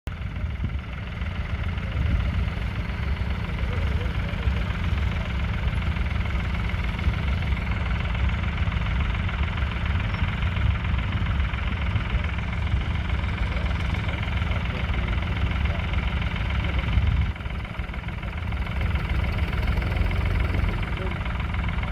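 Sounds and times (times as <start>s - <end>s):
diesel engine running: 0.1s - 21.9s.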